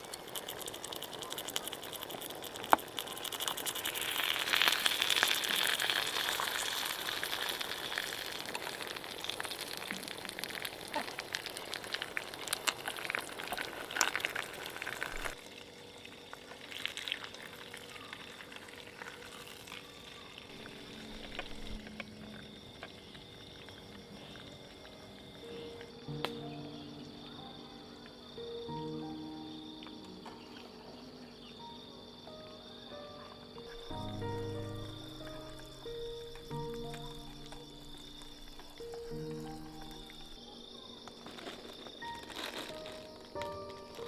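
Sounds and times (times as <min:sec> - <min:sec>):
food sizzling in a pan: 0:00.0 - 0:21.8, 0:33.6 - 0:44.0
faint steady tones: 0:17.7 - 0:41.2.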